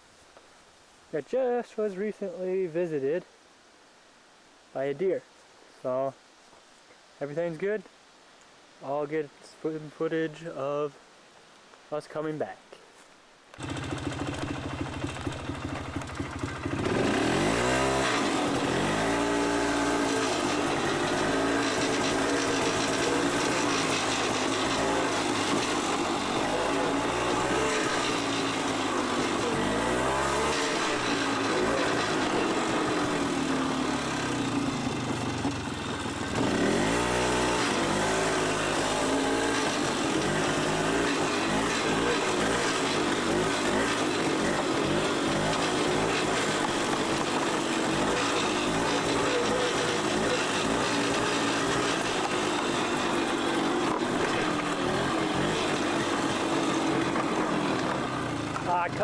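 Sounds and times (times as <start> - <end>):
atv engine revving: 13.5 - 59.0.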